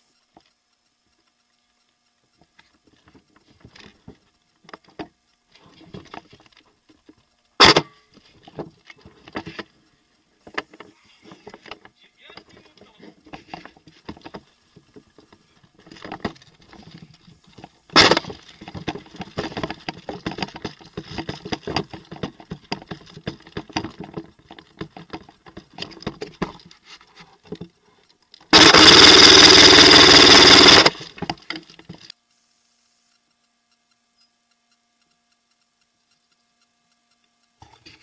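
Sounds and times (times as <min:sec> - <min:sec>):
gearbox whirring: 0:02.8 - 0:26.7, 0:28.5 - 0:32.2
gear rustling: 0:08.2 - 0:32.1
scattered clicks: 0:15.1 - 0:26.7, 0:28.0 - 0:32.2
airsoft gun full-auto burst: 0:18.0 - 0:18.3, 0:28.5 - 0:31.2.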